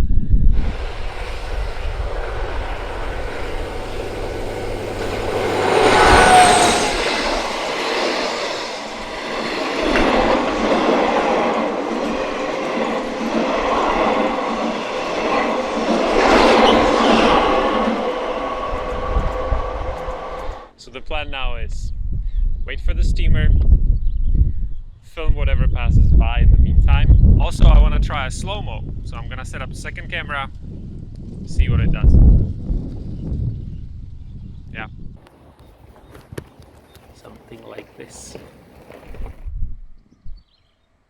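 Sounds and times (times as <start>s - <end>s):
high wheel squeal: 0.6s - 10.6s, 12.1s - 20.7s
train wheels rumbling and clattering: 0.6s - 20.8s.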